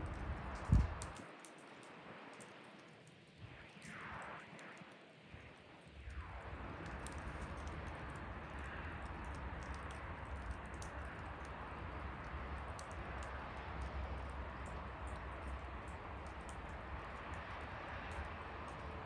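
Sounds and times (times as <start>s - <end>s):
bonfire wood crackling and popping: 0.0s - 19.0s.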